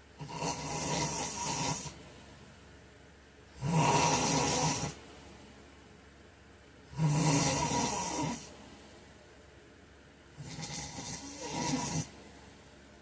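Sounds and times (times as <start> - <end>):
man snoring: 0.2 - 2.0, 3.6 - 5.0, 6.9 - 8.5, 10.4 - 12.2.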